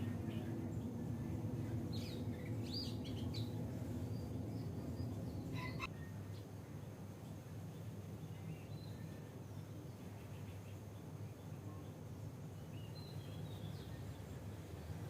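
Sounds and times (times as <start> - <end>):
low background rumble: 0.0 - 9.7.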